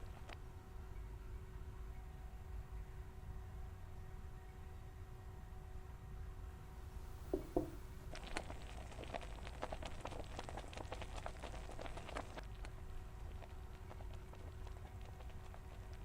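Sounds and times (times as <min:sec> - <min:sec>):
faint steady hum: 0:00.0 - 0:16.0
low knocks on pan: 0:07.3 - 0:07.8
cooking clicks and pops: 0:07.3 - 0:16.0.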